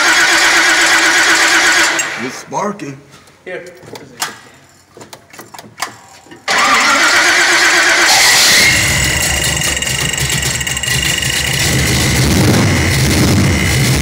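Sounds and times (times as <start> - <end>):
car engine cranking and starting: 0.0 - 2.2, 6.4 - 14.0.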